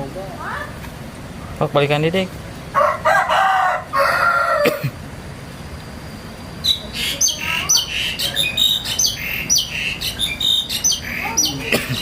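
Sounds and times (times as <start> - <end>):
high-pitched bird chirping: 6.6 - 12.0.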